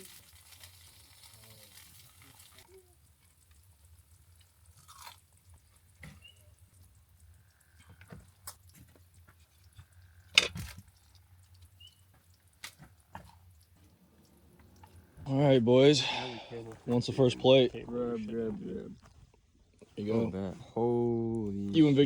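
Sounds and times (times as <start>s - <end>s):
dishes clattering: 10.3s - 10.7s
utensils and dishes clicking: 10.3s - 10.7s.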